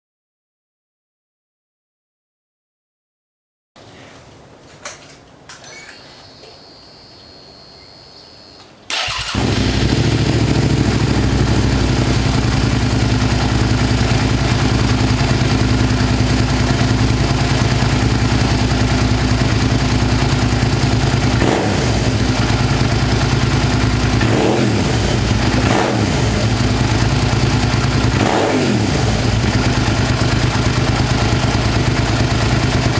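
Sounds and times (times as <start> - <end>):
motorcycle engine idling: 9.0 - 32.9.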